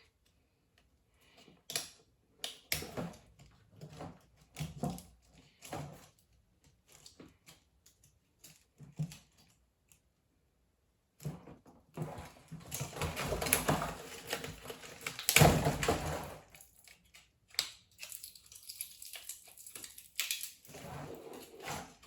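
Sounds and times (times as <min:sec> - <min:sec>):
toy packaging rustling and crinkling: 0:12.1 - 0:22.0
small plastic pieces clicking: 0:14.8 - 0:15.4, 0:16.6 - 0:20.7.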